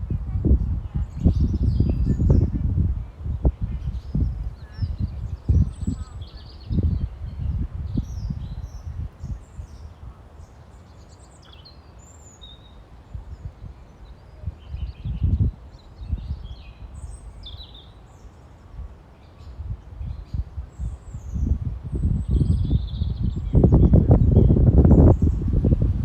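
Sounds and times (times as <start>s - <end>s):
wind buffeting microphone: 0.0s - 10.2s, 13.1s - 17.7s, 18.6s - 26.0s
small birds chirping: 0.2s - 25.9s.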